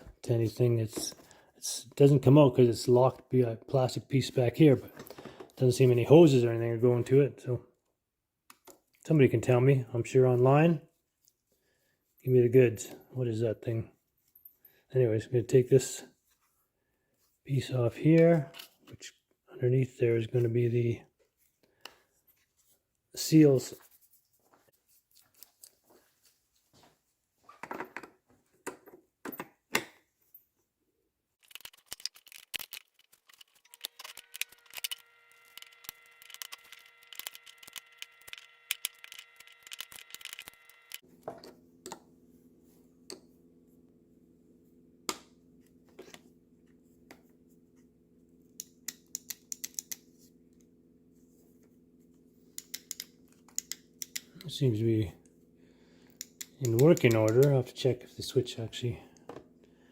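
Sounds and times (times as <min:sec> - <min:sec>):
tools clicking and scraping on plastic: 0:31.4 - 0:42.0, 0:52.5 - 0:54.5, 0:56.1 - 0:57.6
faint steady hum: 0:33.7 - 0:59.9.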